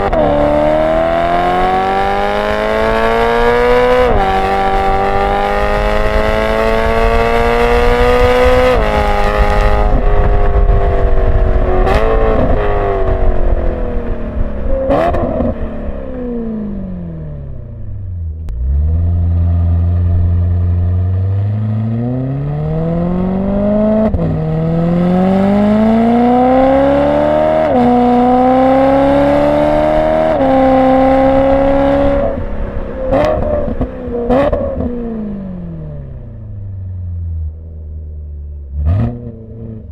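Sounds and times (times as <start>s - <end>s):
car engine accelerating: 0.0s - 39.9s.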